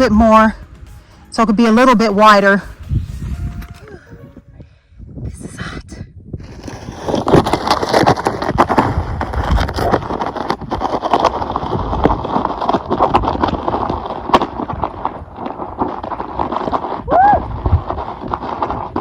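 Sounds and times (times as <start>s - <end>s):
digging tool scraping dirt: 6.4s - 19.0s.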